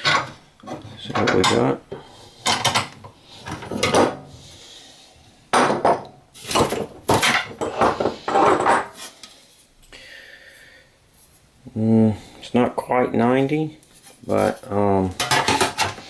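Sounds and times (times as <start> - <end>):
sheet metal clattering and scraping: 0.0 - 1.8, 15.2 - 16.0.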